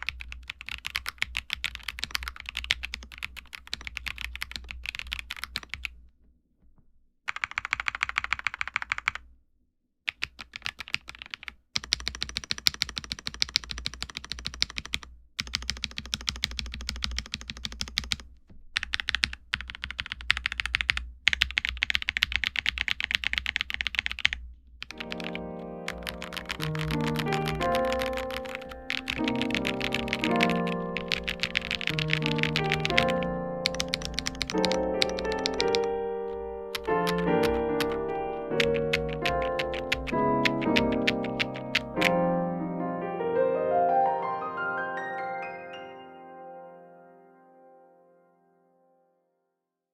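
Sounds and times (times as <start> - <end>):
mechanical keyboard typing: 0.0 - 6.0, 7.3 - 9.2, 10.1 - 42.2.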